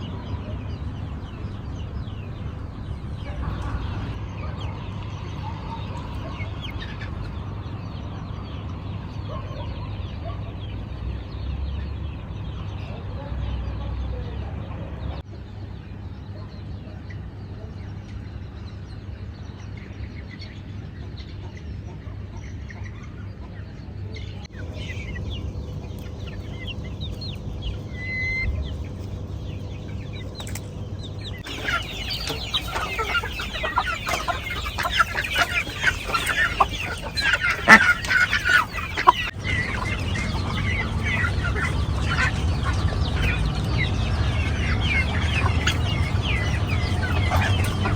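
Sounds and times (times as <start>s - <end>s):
chickens clucking: 0.0s - 15.3s, 20.5s - 47.9s
steady low hum: 24.5s - 47.9s.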